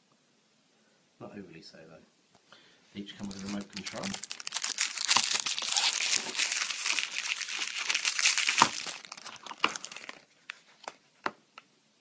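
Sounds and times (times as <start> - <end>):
plastic packaging crinkling: 3.2 - 11.0.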